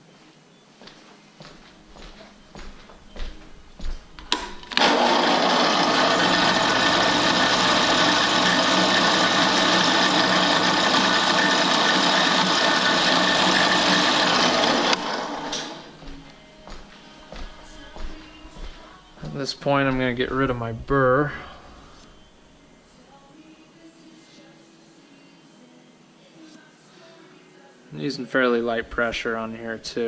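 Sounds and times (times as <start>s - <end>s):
drill press running: 4.3s - 16.0s.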